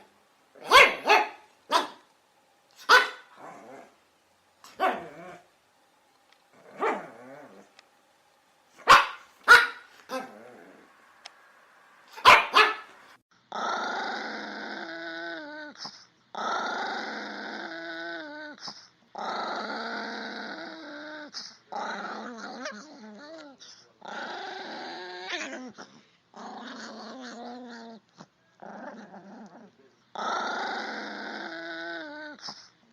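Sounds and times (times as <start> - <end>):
dog barking: 0.6 - 2.0, 2.8 - 3.3, 4.8 - 5.2, 6.8 - 7.1, 8.8 - 10.3, 12.1 - 12.9
small dog growling: 2.8 - 4.0, 4.6 - 5.5, 6.5 - 7.8, 9.9 - 11.0, 13.5 - 32.8.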